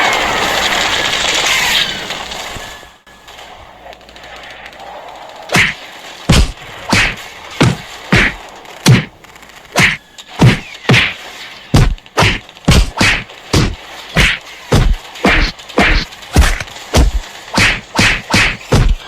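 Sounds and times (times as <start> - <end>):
heavy thwacks with deep thud: 5.5 - 9.2, 9.8 - 11.2, 11.8 - 19.0.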